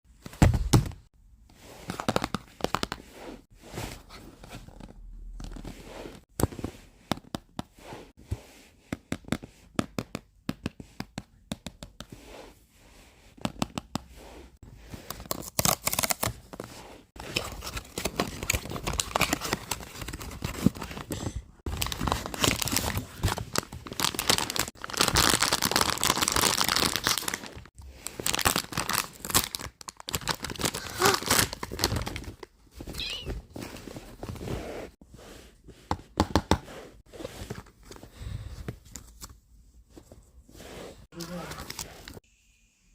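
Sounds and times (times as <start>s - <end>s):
packaging tearing and crinkling: 21.7s - 32.4s.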